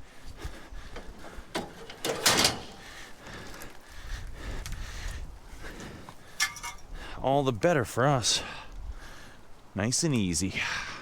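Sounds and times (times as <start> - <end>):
soft knocks and handling noise: 1.0 - 2.8.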